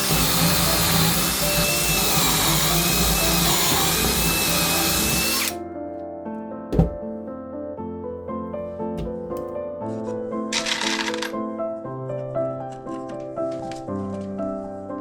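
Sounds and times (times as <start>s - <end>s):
power drill whining: 0.0s - 5.6s.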